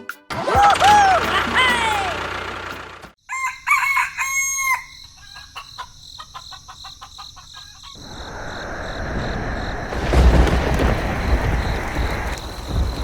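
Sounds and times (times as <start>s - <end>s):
rooster crowing: 3.2s - 5.1s.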